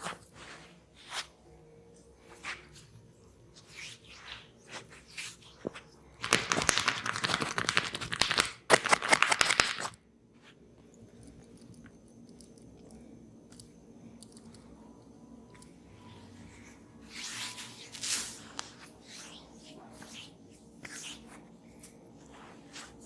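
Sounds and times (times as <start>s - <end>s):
hands crackling through hair: 3.8s - 10.0s.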